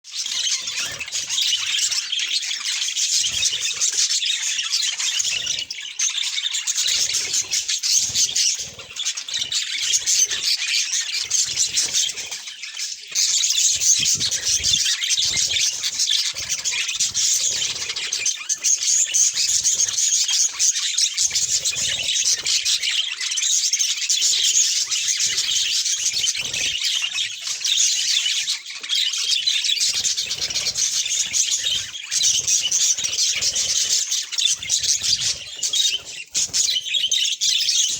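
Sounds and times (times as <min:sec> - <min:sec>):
budgerigars chattering: 0:00.1 - 0:37.9.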